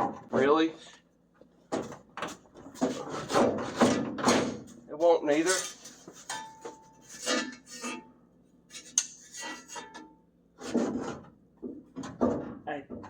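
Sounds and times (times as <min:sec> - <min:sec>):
parts scraping and rubbing: 0:05.3 - 0:08.1, 0:08.7 - 0:11.2.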